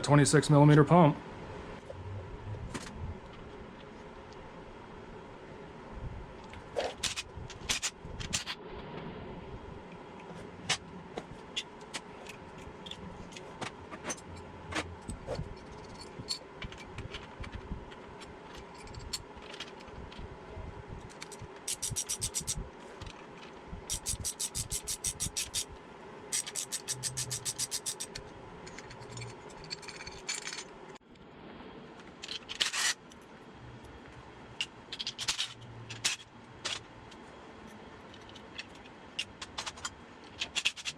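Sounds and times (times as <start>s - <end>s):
fan humming: 0.0s - 40.9s
metal tools clinking and scraping: 11.5s - 17.6s, 26.3s - 30.8s
ratchet clicking: 21.2s - 22.6s, 23.9s - 25.7s, 26.3s - 29.2s.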